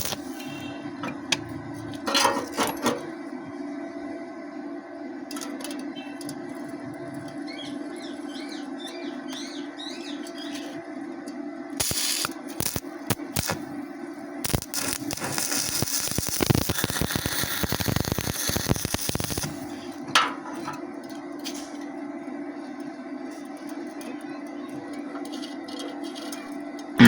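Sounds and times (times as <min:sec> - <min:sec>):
welding arc crackling: 0:00.0 - 0:00.6, 0:11.8 - 0:20.0
steady low hum: 0:00.0 - 0:27.0.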